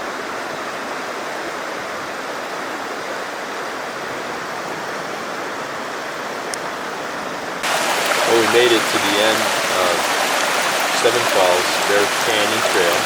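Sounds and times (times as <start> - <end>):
water pouring over rocks: 7.6 - 13.0.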